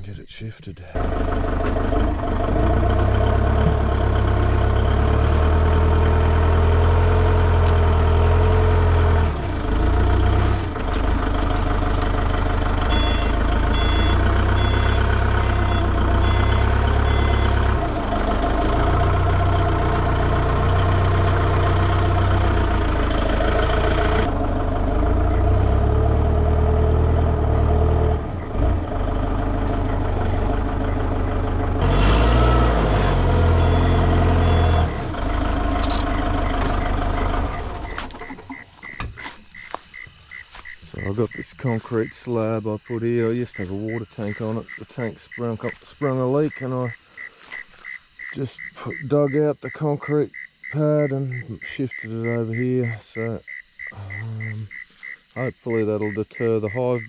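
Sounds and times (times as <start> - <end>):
forklift engine running: 1.0 - 41.8.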